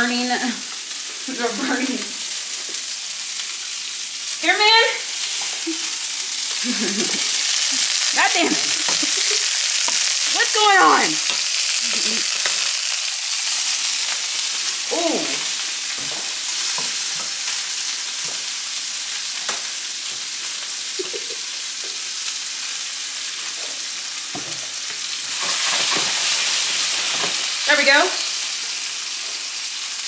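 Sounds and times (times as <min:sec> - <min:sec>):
food sizzling in hot oil: 0:00.0 - 0:30.0.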